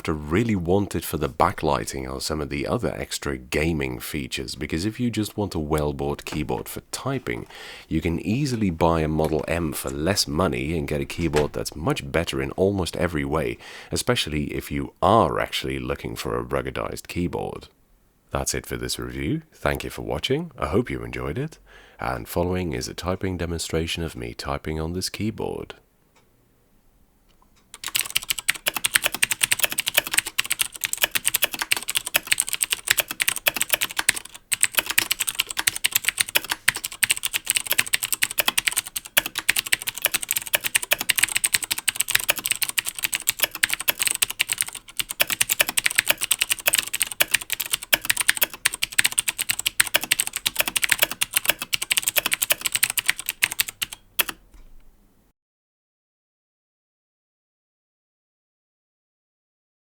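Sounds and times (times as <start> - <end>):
mechanical keyboard typing: 27.7 - 54.4.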